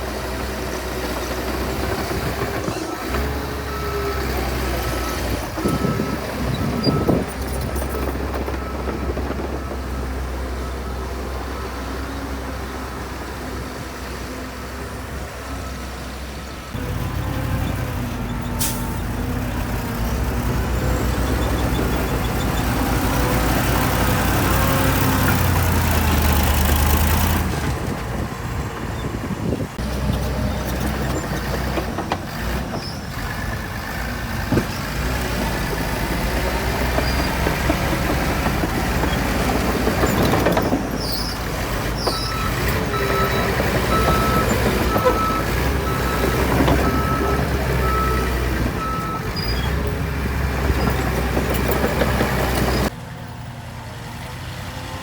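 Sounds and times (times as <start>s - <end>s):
heavy diesel machinery working: 0.0s - 55.0s
reversing alarm beeping: 5.0s - 11.8s, 42.1s - 49.4s.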